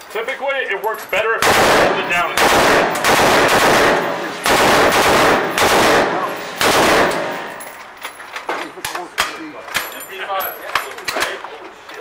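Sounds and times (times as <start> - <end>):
machine gun bursts: 1.4 - 7.6.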